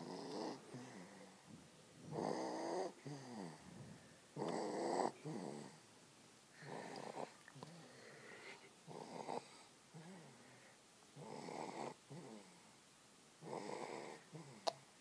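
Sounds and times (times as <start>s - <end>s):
person snoring: 0.0s - 1.3s, 2.1s - 3.7s, 4.4s - 5.8s, 6.6s - 10.4s, 13.4s - 14.7s.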